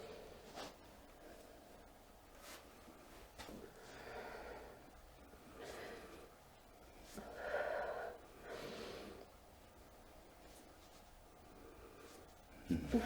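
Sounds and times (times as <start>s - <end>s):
person breathing heavily: 7.1s - 9.3s.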